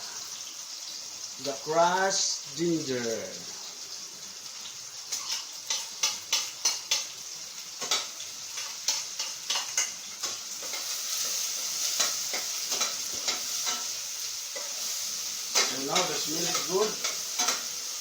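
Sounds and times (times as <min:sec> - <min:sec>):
food sizzling in oil: 0:00.0 - 0:18.0
spoon scraping pan: 0:05.1 - 0:07.2, 0:07.8 - 0:18.0.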